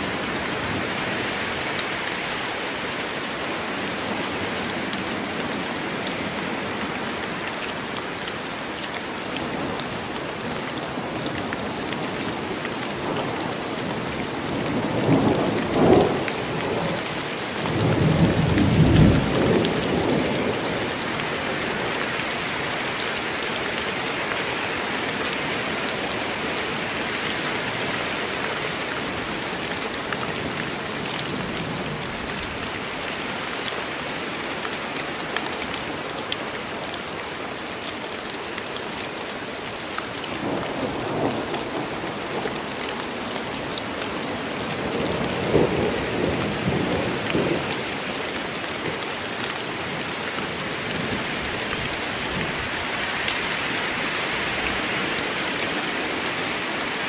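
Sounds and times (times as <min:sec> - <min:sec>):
steady rain in forest: 0:00.0 - 0:57.0
thunder rumbling: 0:17.7 - 0:20.4.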